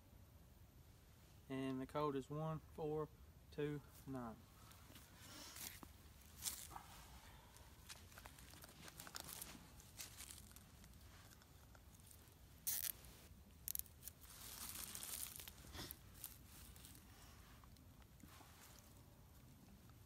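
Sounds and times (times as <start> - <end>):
faint rustling and crinkling: 3.8 - 20.0.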